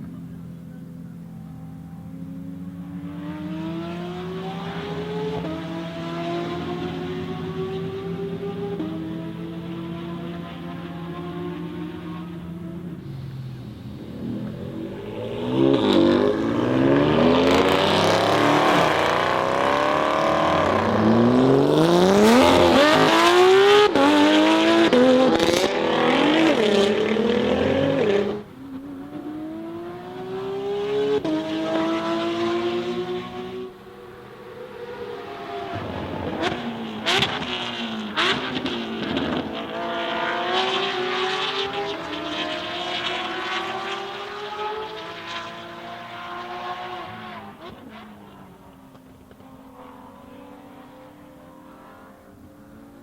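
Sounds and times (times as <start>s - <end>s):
sports car engine revving: 0.0s - 53.0s
exhaust crackles: 11.9s - 24.2s.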